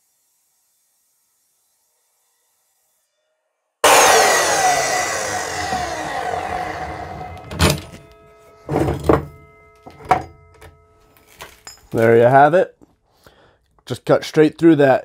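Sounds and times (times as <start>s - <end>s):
miter saw winding down: 3.8s - 8.1s.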